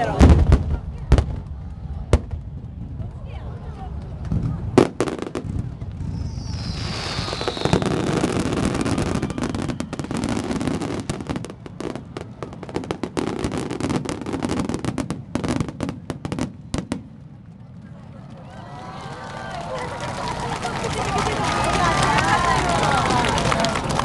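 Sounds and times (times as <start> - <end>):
fireworks crackling and banging: 0.0 - 18.4, 19.0 - 24.0
falling firework whistle: 5.9 - 12.8.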